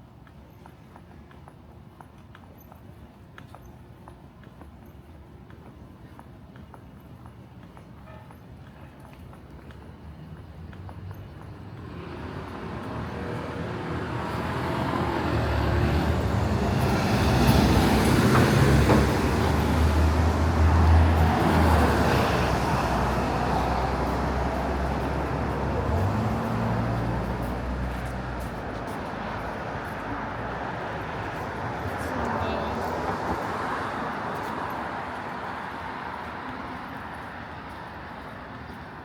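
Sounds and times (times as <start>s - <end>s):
vehicle engine passing by: 11.8s - 35.0s.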